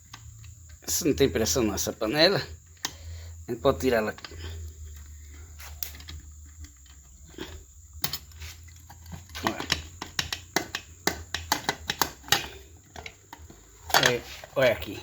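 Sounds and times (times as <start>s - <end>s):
steady low hum: 0.0s - 15.0s
sharp irregular clicks and knocks: 2.7s - 3.1s, 5.8s - 14.2s.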